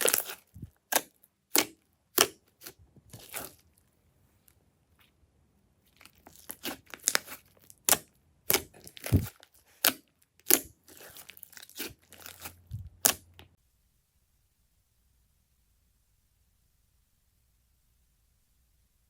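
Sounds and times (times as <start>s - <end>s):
materials crinkling and tearing: 5.9s - 13.4s.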